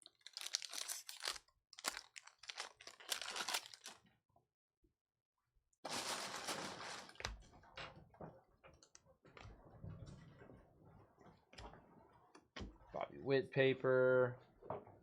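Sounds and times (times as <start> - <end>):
card pack wrapper rustling: 0.0 - 4.0.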